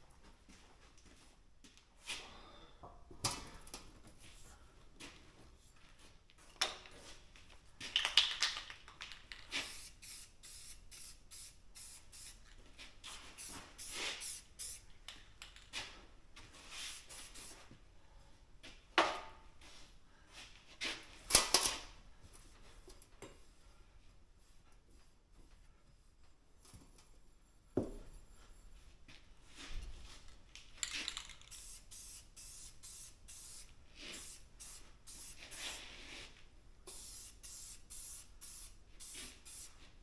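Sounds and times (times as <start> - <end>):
spray paint can hissing: 9.5 - 12.4, 13.4 - 14.8, 16.9 - 17.6, 31.1 - 35.9, 36.9 - 39.8.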